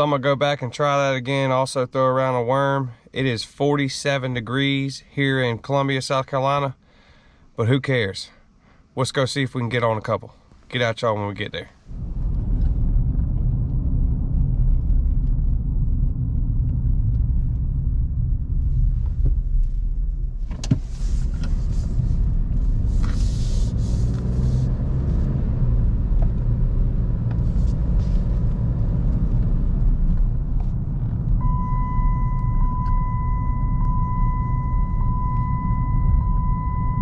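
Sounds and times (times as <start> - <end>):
road and engine noise in vehicle: 10.3 - 37.0
high beep-like tone: 31.4 - 37.0.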